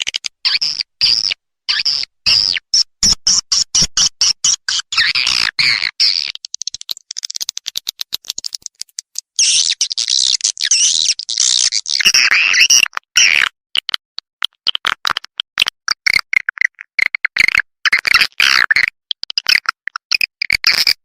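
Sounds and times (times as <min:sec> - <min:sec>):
fast dry clicks: 0:06.3 - 0:10.5.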